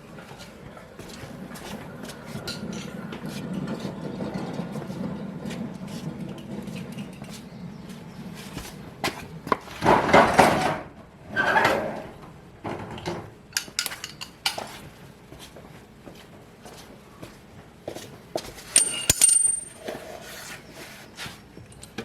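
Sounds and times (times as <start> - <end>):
metal tools clinking and scraping: 13.5 - 14.8, 18.7 - 20.3.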